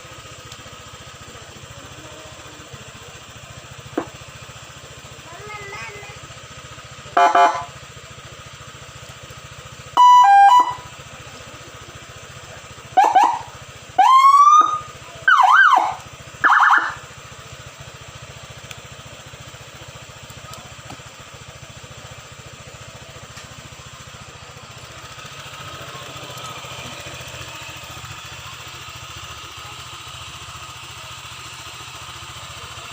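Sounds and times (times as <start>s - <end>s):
scooter engine idling: 0.0s - 32.9s
scooter siren wailing and chirping: 7.2s - 7.8s, 10.0s - 11.1s, 12.9s - 17.2s.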